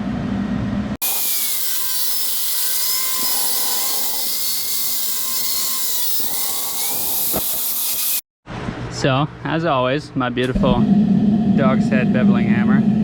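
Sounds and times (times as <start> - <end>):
power tool cutting steel: 1.0 - 8.2.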